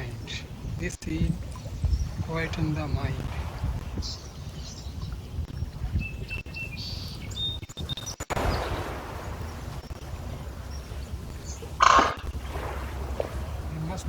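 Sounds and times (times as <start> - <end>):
lake waves lapping on stones: 0.0 - 5.9, 8.4 - 14.0
steady low rumble: 9.3 - 14.0
bird chirps: 10.7 - 12.3.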